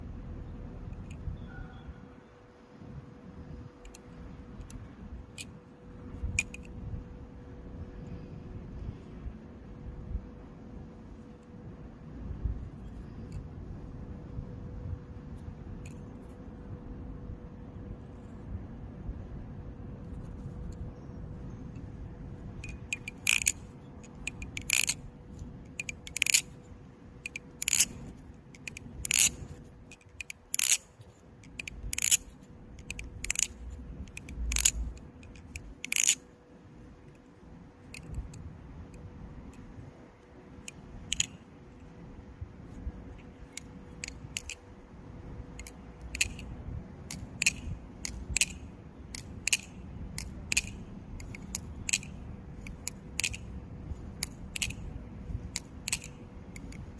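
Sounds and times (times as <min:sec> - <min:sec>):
metallic clicks of knife flipping: 0:22.6 - 0:25.0, 0:25.7 - 0:26.6, 0:27.2 - 0:36.2, 0:45.6 - 0:56.9.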